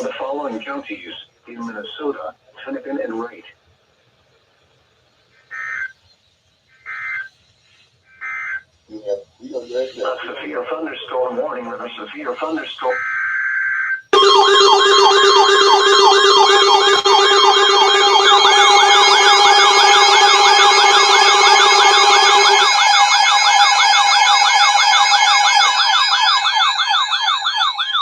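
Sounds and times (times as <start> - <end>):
electronic siren sweeping up and down: 14.2 - 28.0.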